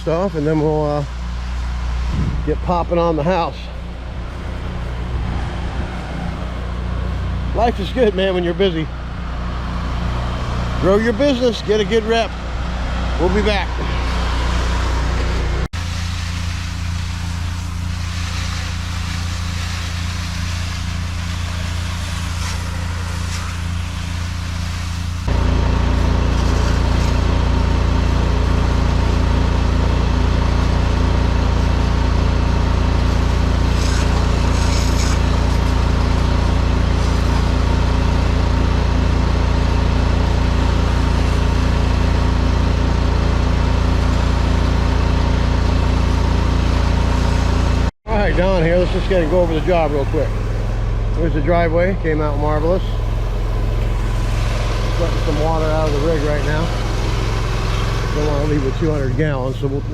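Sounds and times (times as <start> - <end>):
pressure washer engine running: 0.0 - 59.9
steady hiss: 15.8 - 25.3.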